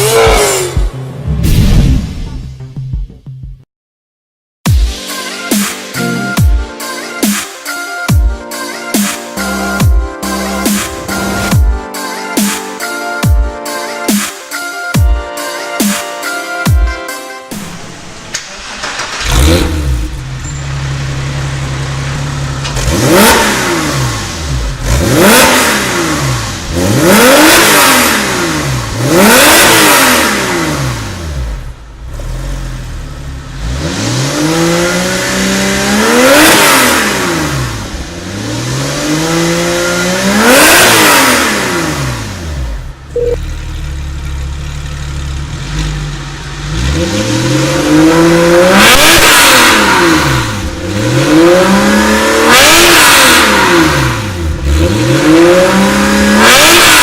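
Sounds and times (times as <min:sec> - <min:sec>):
car engine idling and revving: 0:00.0 - 0:02.9, 0:09.4 - 0:11.8, 0:17.5 - 0:57.0.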